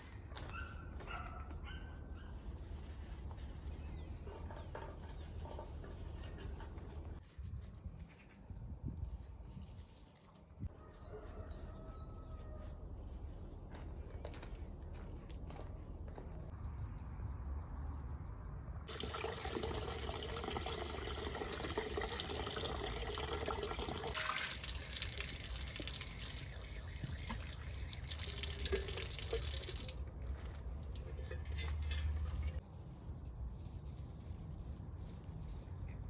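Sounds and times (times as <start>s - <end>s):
tap water splashing: 27.0s - 30.0s.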